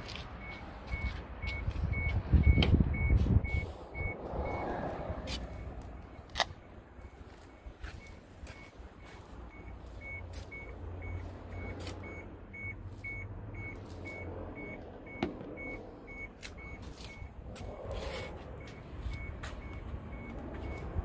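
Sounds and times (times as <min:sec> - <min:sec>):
vehicle warning buzzer beeping: 0:07.0 - 0:17.3, 0:18.6 - 0:20.9.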